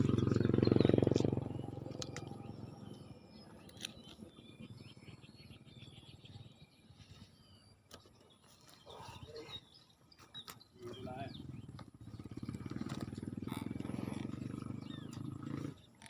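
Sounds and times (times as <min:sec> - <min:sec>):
low pulsing rumble: 0:00.0 - 0:07.7, 0:10.8 - 0:15.9
faint bird chirps: 0:00.0 - 0:16.0
sharp clicks: 0:01.0 - 0:02.4.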